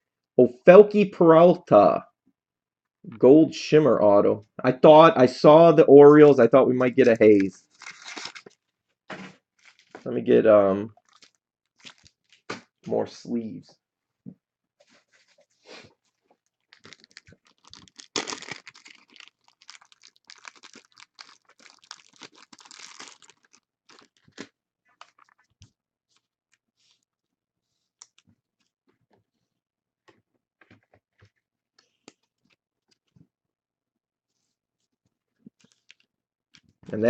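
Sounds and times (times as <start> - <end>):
plastic sleeves crinkling: 6.9 - 10.2, 10.9 - 12.8, 16.0 - 27.0.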